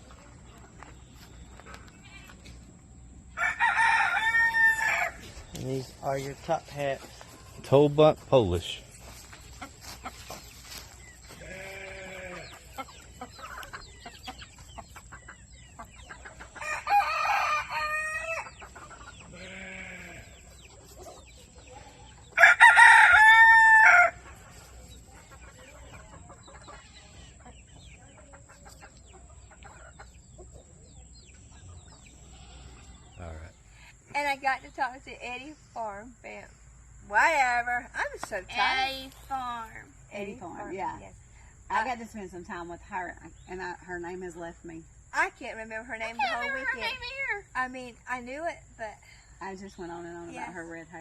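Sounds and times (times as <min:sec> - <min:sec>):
roosters crowing: 0:03.2 - 0:05.6, 0:08.6 - 0:30.1, 0:46.0 - 0:47.4.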